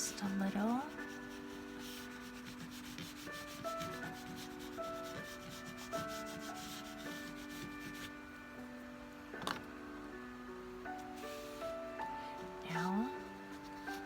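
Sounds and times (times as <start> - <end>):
crayon rubbing on paper: 0.0 - 8.2, 12.7 - 14.0
soft background music: 0.0 - 14.0.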